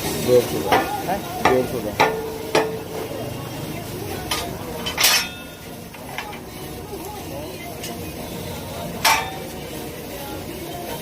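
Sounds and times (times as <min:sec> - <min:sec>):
hammer striking metal: 0:00.7 - 0:03.1.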